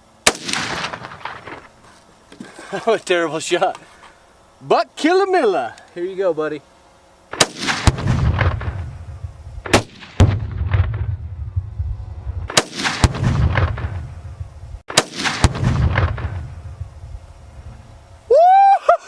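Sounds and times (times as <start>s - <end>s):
rifle shot crack: 0.2s - 1.7s, 7.3s - 11.2s, 12.5s - 14.2s, 14.9s - 16.7s
exploding target bang: 7.4s - 16.9s
low rolling rumble echoing: 7.9s - 14.8s.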